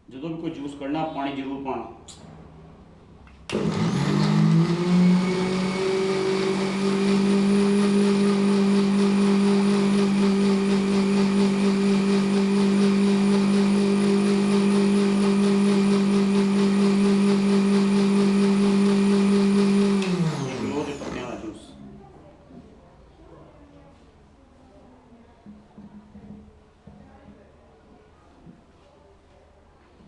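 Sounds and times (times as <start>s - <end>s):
mixer grinder whining: 3.5s - 21.7s.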